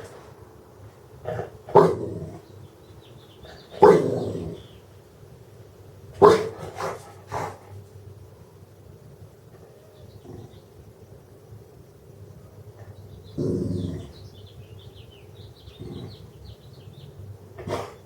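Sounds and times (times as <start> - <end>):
dog barking: 1.3 - 2.2, 3.8 - 4.2, 6.2 - 7.6, 17.6 - 18.0.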